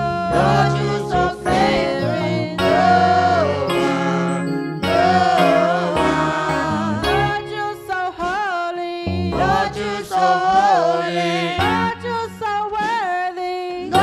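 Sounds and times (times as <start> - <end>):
keyboard and bass chords: 0.0 - 8.3, 9.1 - 10.5, 11.6 - 12.5
person singing: 0.0 - 8.5.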